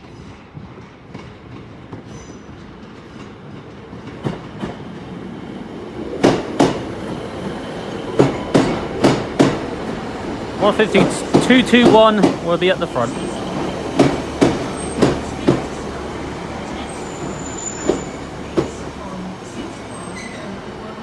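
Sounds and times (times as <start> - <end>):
diesel train rumbling: 0.0 - 21.0
wheels clicking over rail joints: 6.0 - 19.0.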